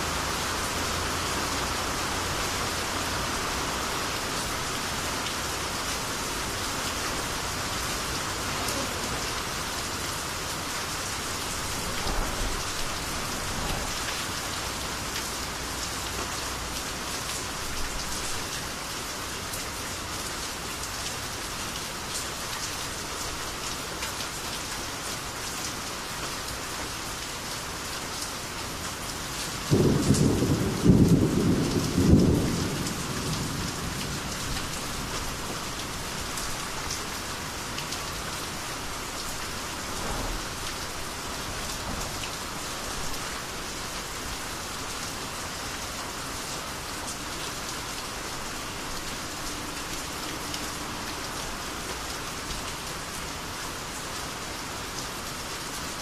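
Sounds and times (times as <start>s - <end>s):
rain falling: 0.0s - 56.0s
low peal of thunder: 29.7s - 34.6s.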